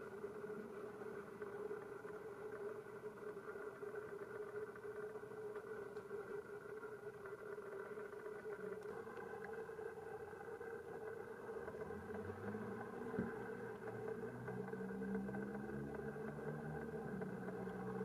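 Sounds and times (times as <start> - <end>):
engine hum: 8.8 - 18.0.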